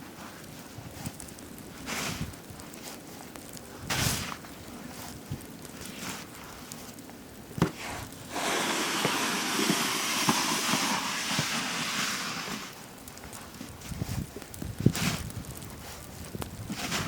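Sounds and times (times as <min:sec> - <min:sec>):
snow shovel scraping: 0:01.8 - 0:02.3, 0:03.8 - 0:04.4, 0:07.6 - 0:12.8, 0:14.9 - 0:15.3, 0:16.7 - 0:17.0.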